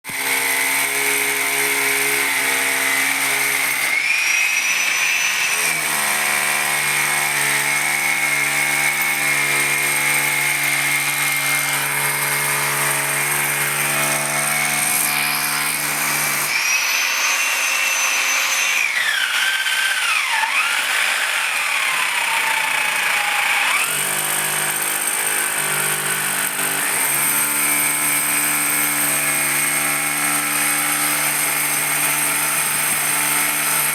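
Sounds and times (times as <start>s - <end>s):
electric drill boring concrete: 0.1s - 33.9s.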